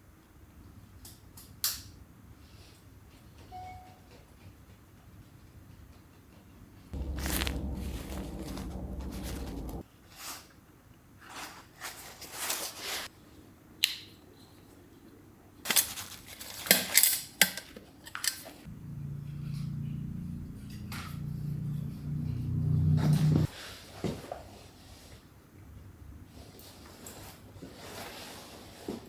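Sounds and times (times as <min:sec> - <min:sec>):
low steady hum: 0:07.0 - 0:12.2, 0:18.7 - 0:23.5
rustling: 0:07.0 - 0:13.1.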